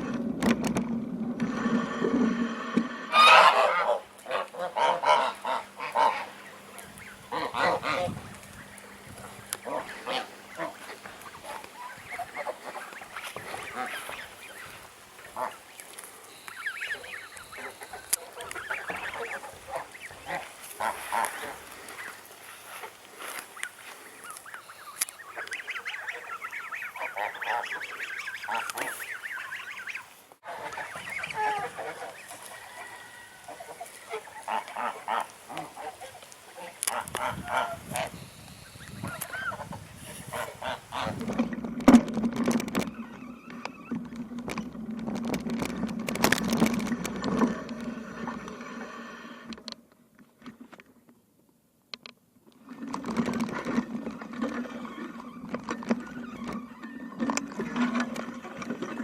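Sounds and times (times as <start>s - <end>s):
poultry honking calls: 3.0s - 41.4s.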